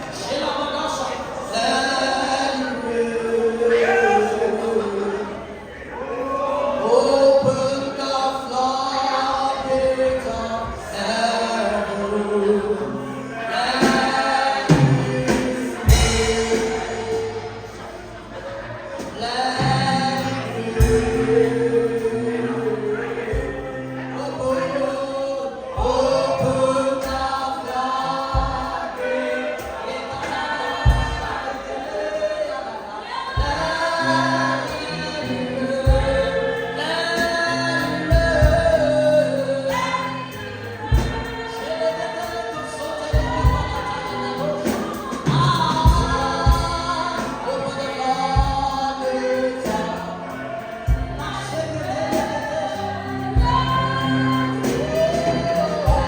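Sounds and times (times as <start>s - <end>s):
choir and congregation singing: 0.0s - 56.0s
bass and drum beat: 13.8s - 18.4s, 19.0s - 24.0s, 28.2s - 29.0s, 30.5s - 31.5s, 33.4s - 36.5s, 37.2s - 42.4s, 43.0s - 56.0s.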